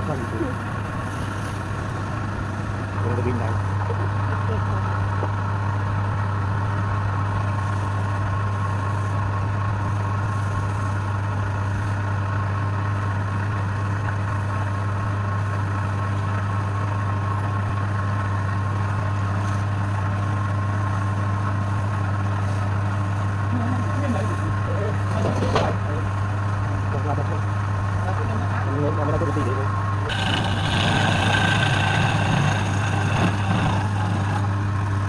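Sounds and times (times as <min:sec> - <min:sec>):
faint steady whine: 0:25.7 - 0:35.0
wood lathe humming: 0:29.8 - 0:34.6.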